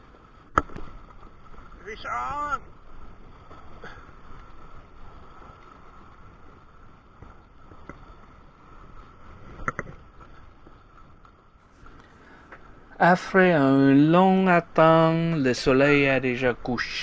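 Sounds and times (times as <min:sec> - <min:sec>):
small clicks and knocks: 0:09.5 - 0:12.7.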